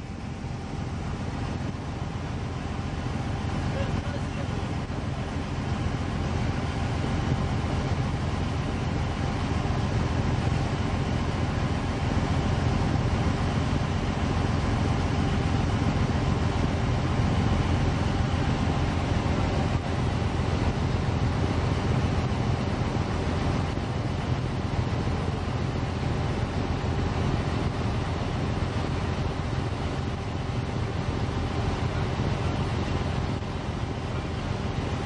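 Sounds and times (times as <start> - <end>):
boat engine droning: 0.0 - 35.0.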